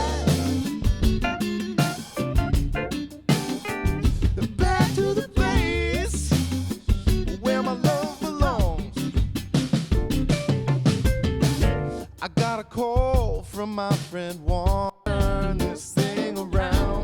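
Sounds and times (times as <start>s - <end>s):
band playing: 0.0s - 12.8s.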